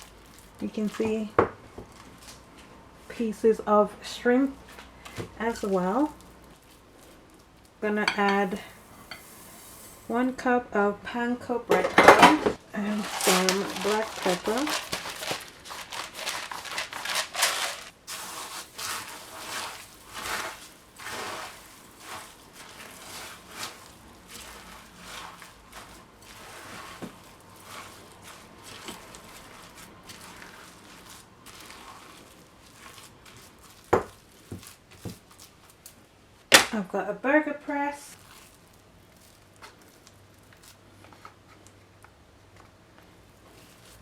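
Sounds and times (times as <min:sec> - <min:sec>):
utensil scraping glass bowl: 0:08.1 - 0:10.3.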